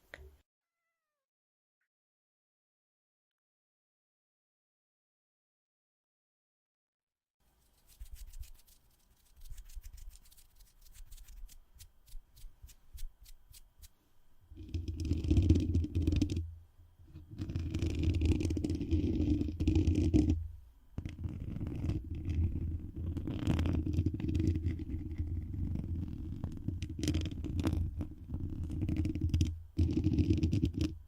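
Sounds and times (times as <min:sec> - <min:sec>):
rubbing against microphone: 0:07.5 - 0:14.0, 0:17.1 - 0:20.4, 0:21.0 - 0:31.0.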